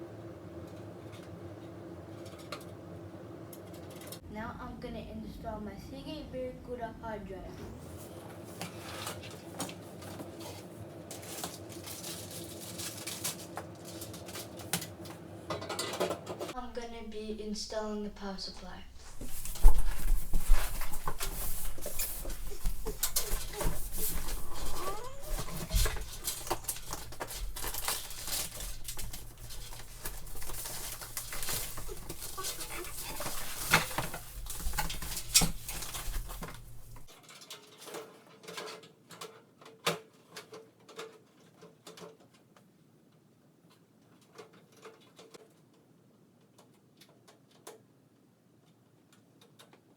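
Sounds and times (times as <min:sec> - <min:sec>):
faint steady hum: 0:14.0 - 0:37.1.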